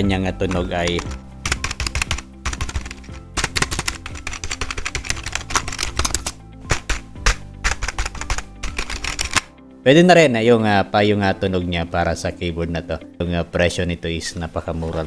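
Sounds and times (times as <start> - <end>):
mechanical keyboard typing: 0.5 - 9.5.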